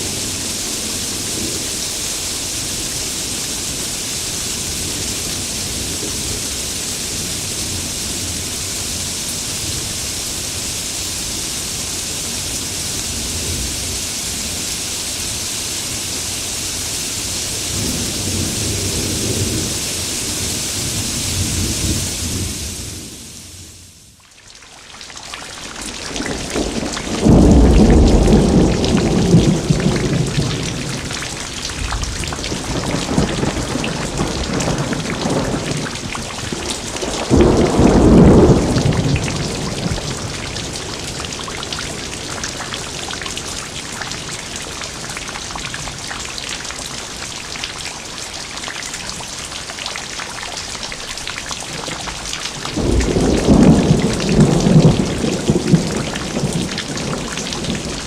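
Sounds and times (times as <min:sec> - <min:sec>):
rain hissing: 0:00.0 - 0:58.0
low thunder rumble: 0:26.0 - 0:43.8, 0:52.7 - 0:58.0.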